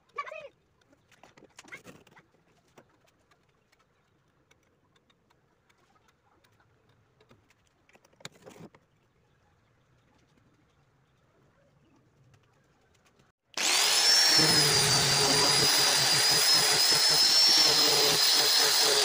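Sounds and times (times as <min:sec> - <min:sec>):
faint clicks and rustling: 0:09.9 - 0:13.3.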